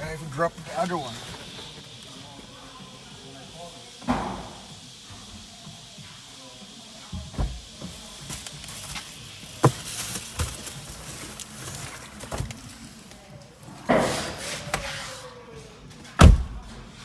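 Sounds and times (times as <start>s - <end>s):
rustling clatter: 0.0s - 2.3s.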